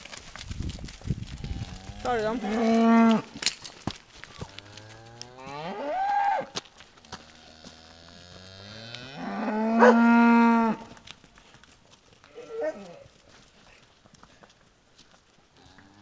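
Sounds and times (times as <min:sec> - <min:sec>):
cows mooing: 0:01.4 - 0:03.3, 0:04.4 - 0:06.5, 0:07.1 - 0:10.9.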